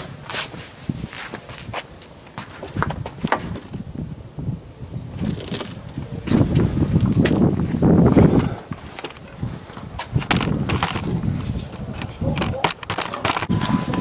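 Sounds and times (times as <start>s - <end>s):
light rustling: 0.0s - 3.9s, 5.1s - 14.0s
metal pieces clinking and jangling: 1.0s - 3.9s, 5.1s - 6.1s, 6.9s - 7.8s.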